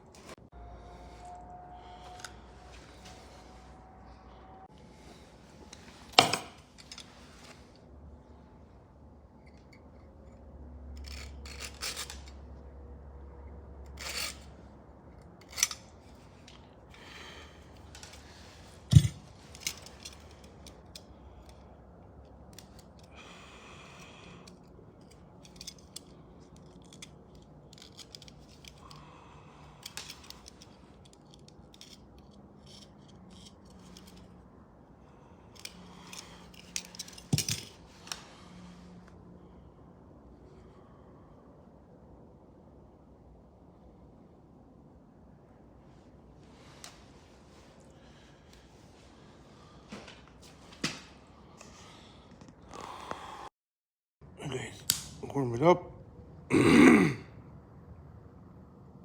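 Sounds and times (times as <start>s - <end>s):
small tools clicking and scraping: 1.2s - 3.2s, 5.0s - 7.9s, 9.3s - 12.7s, 13.5s - 23.2s, 23.9s - 39.0s.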